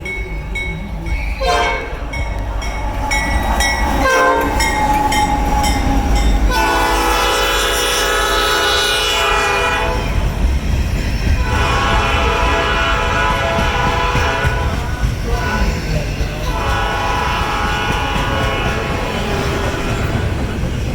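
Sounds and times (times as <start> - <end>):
freight train rumble: 0.0 - 20.9
locomotive air horn blasts: 1.4 - 2.2, 4.0 - 4.6, 6.5 - 10.0, 11.4 - 14.8, 16.5 - 20.3.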